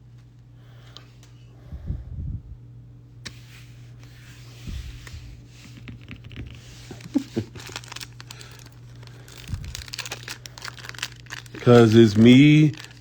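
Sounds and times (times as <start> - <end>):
low electrical hum: 0.0 - 13.0
cards and wrappers rustling: 5.7 - 13.0.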